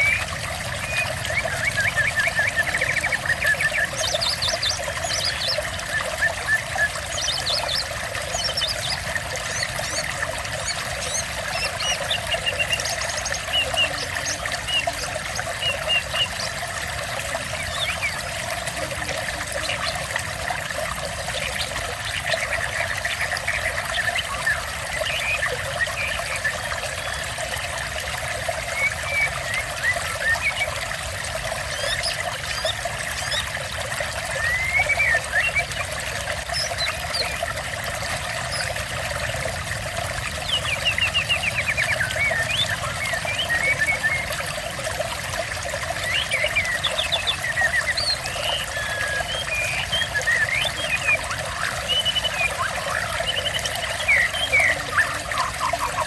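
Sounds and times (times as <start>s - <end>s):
songbirds chirping: 0.0s - 27.5s, 28.5s - 44.8s, 45.7s - 56.0s
water trickling: 0.0s - 56.0s.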